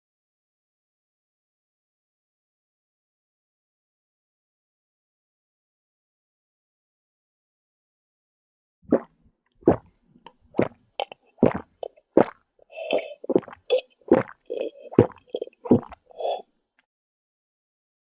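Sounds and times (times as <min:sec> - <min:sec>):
monkey gulping and slurping: 0:09.7 - 0:16.4.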